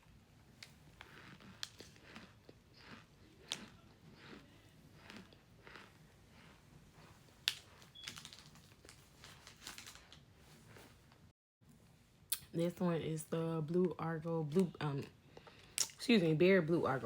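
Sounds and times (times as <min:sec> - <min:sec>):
crunching and chewing snack: 0:00.0 - 0:10.8
sharp chewing clicks: 0:01.0 - 0:06.0.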